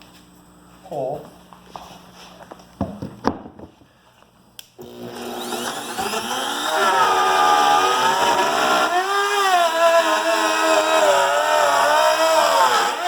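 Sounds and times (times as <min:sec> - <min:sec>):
wood router whining: 0:04.8 - 0:13.0.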